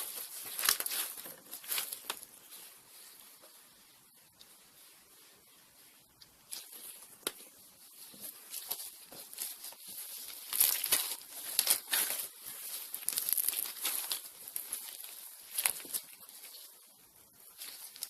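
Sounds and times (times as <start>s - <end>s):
slime crackling and popping: 10.3s - 16.1s.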